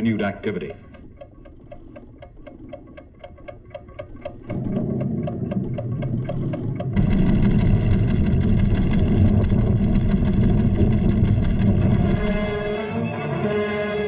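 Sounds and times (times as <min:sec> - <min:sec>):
quick mechanical ticking: 0:00.0 - 0:12.7
deep earth rumbling: 0:04.5 - 0:12.9.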